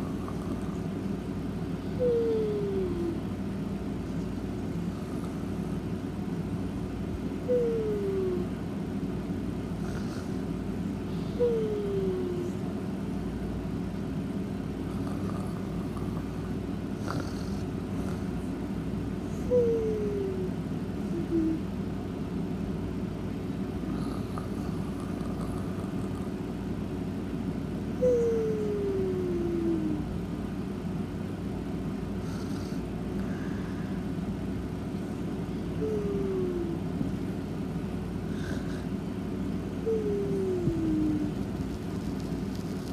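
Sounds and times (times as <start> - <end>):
cat snoring: 0.0 - 0.9, 9.8 - 10.4, 14.9 - 16.4, 17.0 - 18.3, 23.9 - 26.3, 32.2 - 32.8, 35.8 - 36.7, 38.3 - 38.9.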